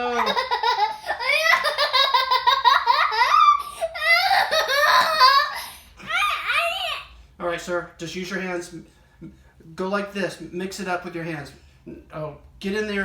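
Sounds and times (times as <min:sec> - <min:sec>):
young child laughing: 0:00.0 - 0:07.0.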